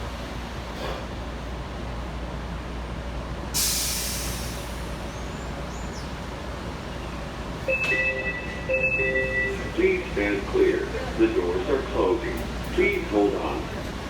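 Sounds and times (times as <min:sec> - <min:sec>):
train car low hum: 0:00.0 - 0:14.0
hiss of released air: 0:03.6 - 0:04.9
two-tone electronic door chime: 0:07.7 - 0:09.9.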